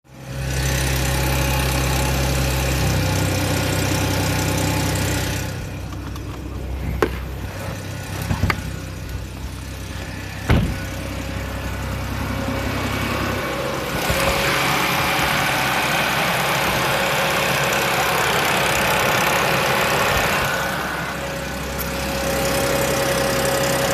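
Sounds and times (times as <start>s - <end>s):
car engine idling with rattle: 0.1s - 23.9s
sharp engine knocks: 5.9s - 9.5s, 10.4s - 11.0s.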